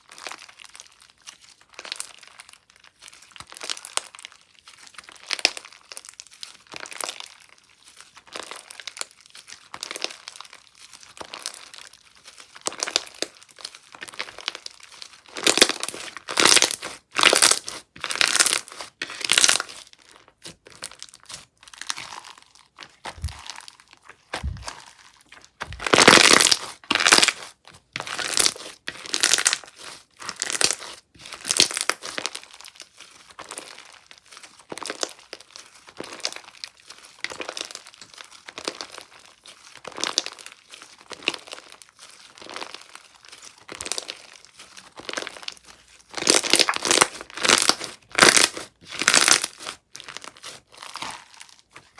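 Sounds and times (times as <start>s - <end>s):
slime squishing with crackling pops: 8.1s - 51.9s.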